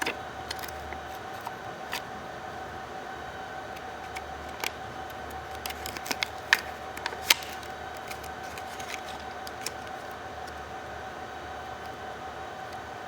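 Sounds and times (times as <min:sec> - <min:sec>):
hands handling laptop parts: 0:00.0 - 0:02.1, 0:03.7 - 0:10.6
electrical hum: 0:00.0 - 0:13.0.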